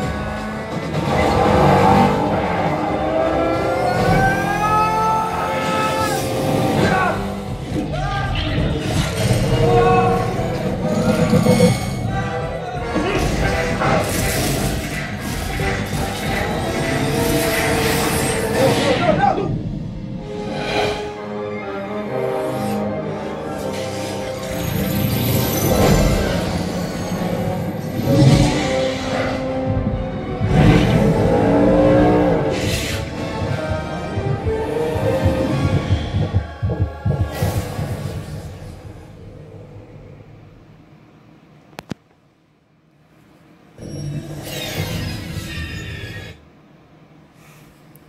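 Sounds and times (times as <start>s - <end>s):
car engine sound effects: 0.0s - 7.8s, 23.9s - 40.6s
heavy low bass: 29.6s - 39.3s.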